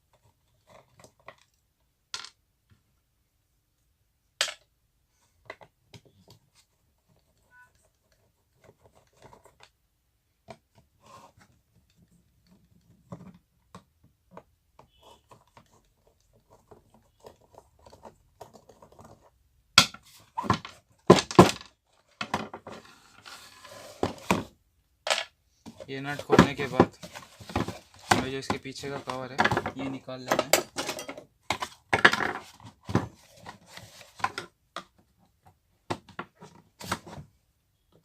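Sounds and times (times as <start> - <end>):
metal parts knocking and clattering: 29.4 - 31.2.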